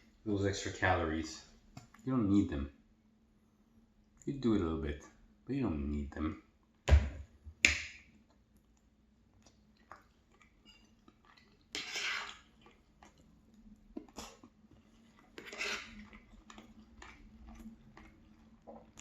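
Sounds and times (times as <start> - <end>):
quiet chewing: 8.2 - 19.0.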